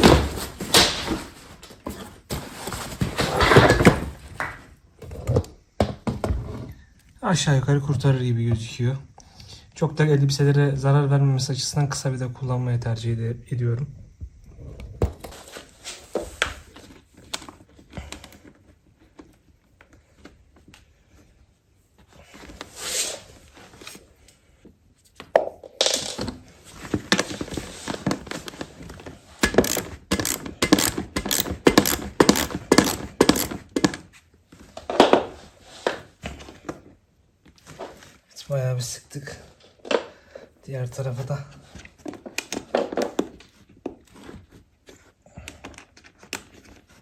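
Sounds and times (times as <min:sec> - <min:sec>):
tool knocking and scraping parts: 0:00.0 - 0:06.8, 0:25.8 - 0:34.2
sharp ratchet clicks: 0:29.4 - 0:33.6.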